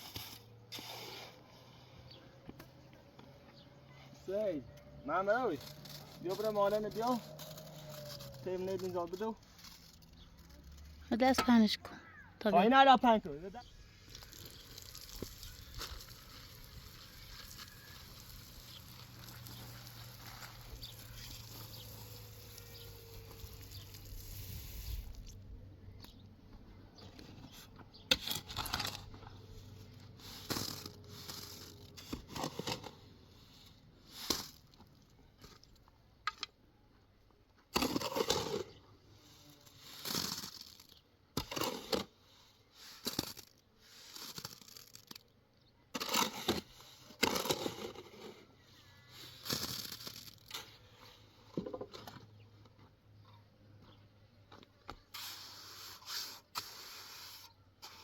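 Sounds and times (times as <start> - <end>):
short scrapes: 0.0 - 2.0.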